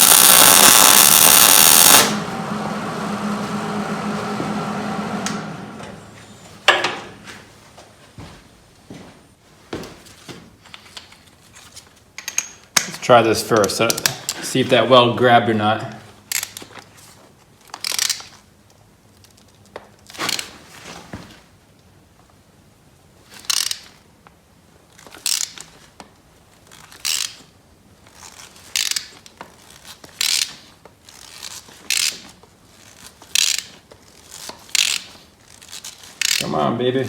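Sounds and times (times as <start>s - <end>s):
ratchet wrench clicking: 0.0s - 2.1s, 23.5s - 23.8s, 25.2s - 25.6s, 27.0s - 27.4s, 28.8s - 29.1s, 34.7s - 35.1s, 36.2s - 36.4s.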